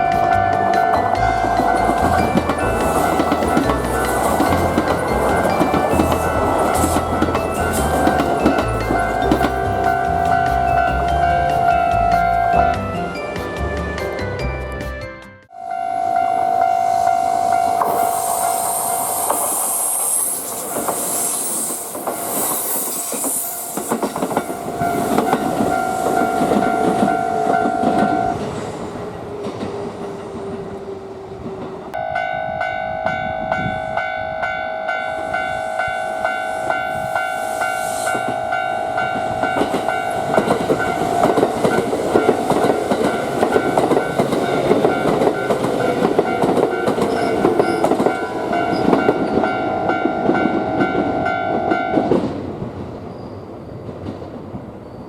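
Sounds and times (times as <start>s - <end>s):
train wheels clattering on rails: 0.0s - 12.8s, 17.6s - 32.0s, 38.1s - 54.8s
level crossing alarm ringing: 0.2s - 12.8s, 15.5s - 17.8s, 32.0s - 52.1s.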